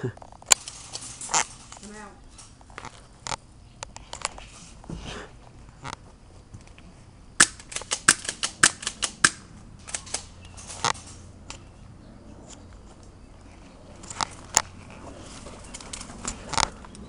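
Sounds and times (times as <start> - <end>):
airsoft guns firing: 7.4 - 11.2.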